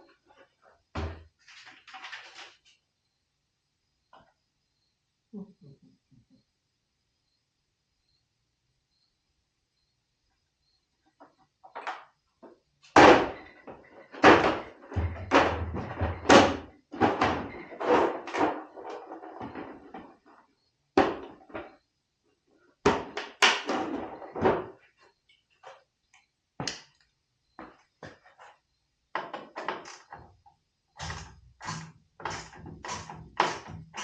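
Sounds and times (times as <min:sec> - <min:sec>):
objects knocking and clunking: 0:00.0 - 0:02.6, 0:11.1 - 0:21.8, 0:22.8 - 0:24.9, 0:27.5 - 0:34.0.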